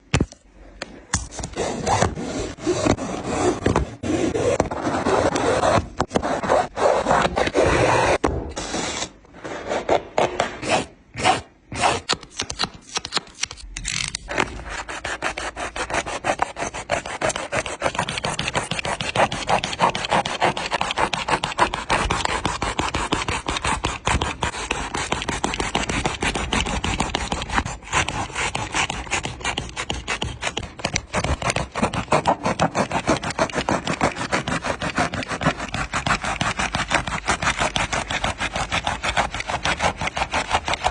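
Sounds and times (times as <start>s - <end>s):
saw rasping through shoe sole: 14.9s - 40.9s.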